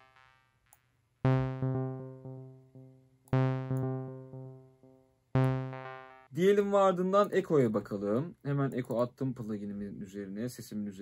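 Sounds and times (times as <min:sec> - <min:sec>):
low synthesizer note with echoes: 0:01.3 - 0:06.4.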